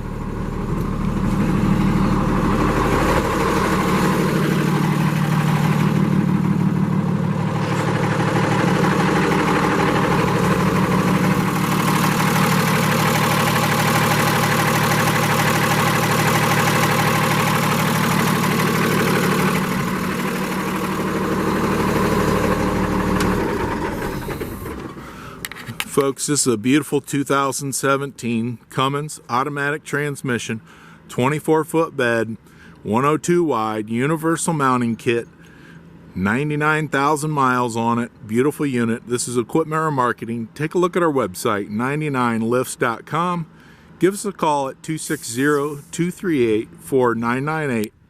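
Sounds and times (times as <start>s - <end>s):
diesel truck engine idling: 0.0s - 26.0s.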